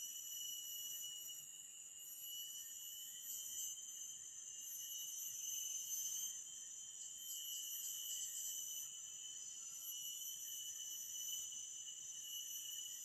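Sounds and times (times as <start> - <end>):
insects droning: 0.0 - 13.0.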